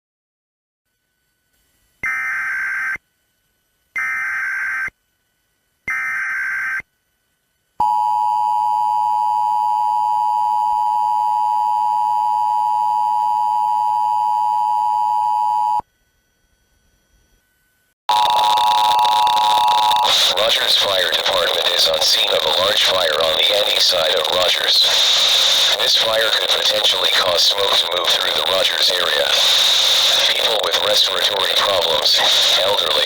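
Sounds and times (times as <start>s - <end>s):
two-tone attention signal: 18.1s - 20.6s
warbling digital data tone: 18.1s - 33.0s.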